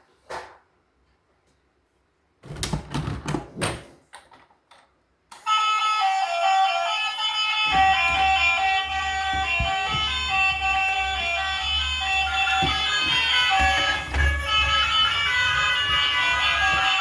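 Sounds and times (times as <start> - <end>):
sharp knocks and clatters: 7.7 - 17.0.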